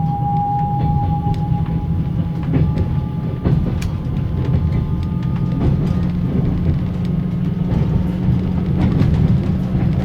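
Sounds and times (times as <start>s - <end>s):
generator howling with steady tone: 0.0s - 6.5s
low rumble: 0.0s - 7.0s
wheels clacking over rail joints: 2.1s - 10.0s.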